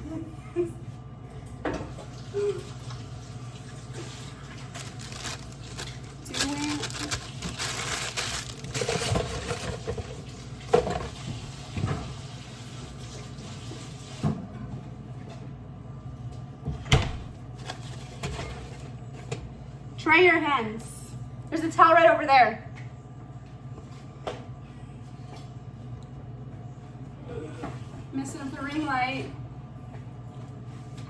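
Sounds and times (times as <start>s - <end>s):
tap water running into sink: 8.7s - 14.4s.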